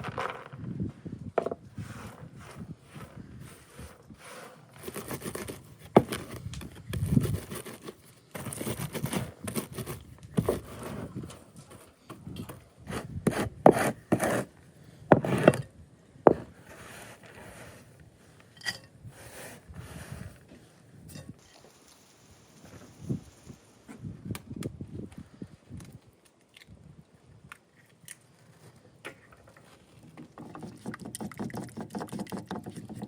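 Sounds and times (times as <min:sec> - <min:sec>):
scraping and rubbing: 0:00.0 - 0:12.0, 0:12.9 - 0:14.5, 0:15.1 - 0:15.7, 0:16.3 - 0:18.0.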